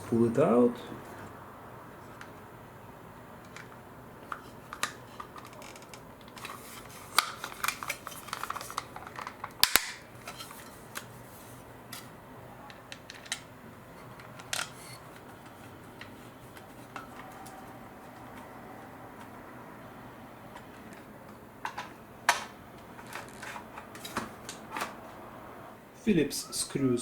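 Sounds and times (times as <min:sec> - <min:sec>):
plastic parts clicking and snapping: 0:03.4 - 0:11.1, 0:12.7 - 0:13.5, 0:14.1 - 0:17.6.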